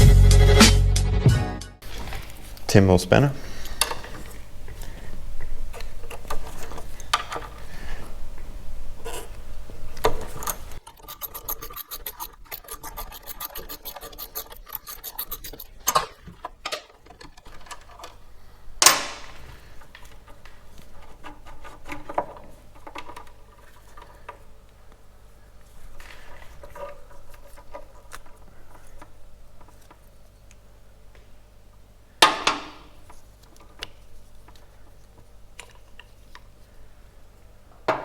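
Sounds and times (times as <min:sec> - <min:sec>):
spanner and metal parts clicking: 0:10.0 - 0:18.2
rapid even ticking: 0:10.8 - 0:16.0.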